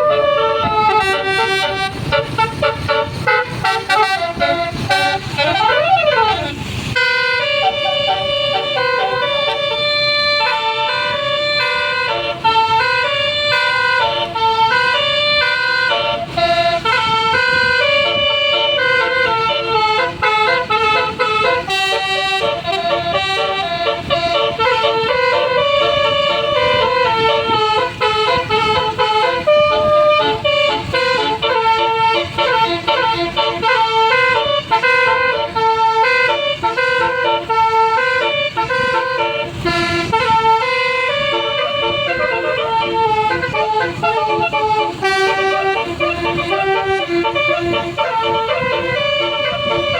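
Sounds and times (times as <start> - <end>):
multi-tone air horn tune: 0.0 - 49.9.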